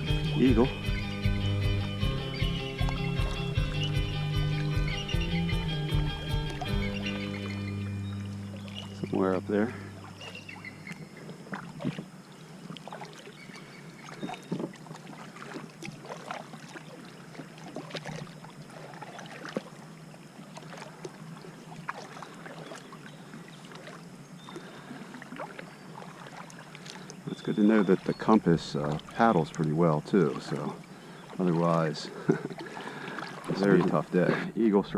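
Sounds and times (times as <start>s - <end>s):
kayak paddle splashing in water: 0.0s - 34.6s
water dripping: 1.7s - 5.0s, 5.6s - 12.0s, 24.6s - 34.3s.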